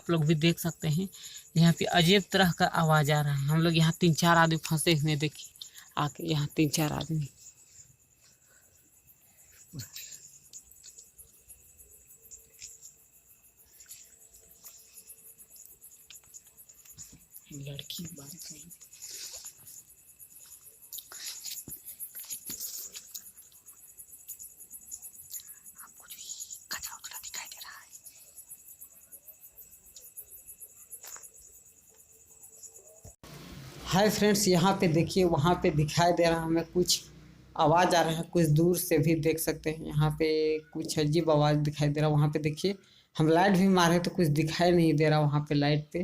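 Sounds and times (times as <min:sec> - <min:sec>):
crickets chirping: 0:00.0 - 0:46.0
faint ticks: 0:09.5 - 0:11.4, 0:12.2 - 0:13.0, 0:13.6 - 0:28.3, 0:29.8 - 0:30.3.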